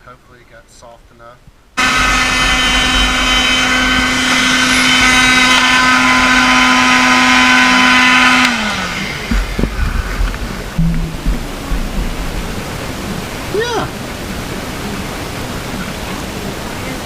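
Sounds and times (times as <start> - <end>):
heat gun running: 1.8 - 12.8
fan motor winding down: 1.8 - 13.6.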